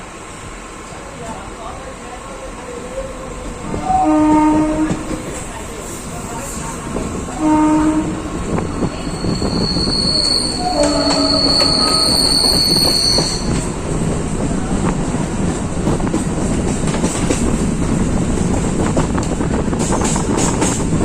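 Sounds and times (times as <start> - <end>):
train rumbling: 0.0 - 21.0
train wheels squealing: 8.7 - 13.8.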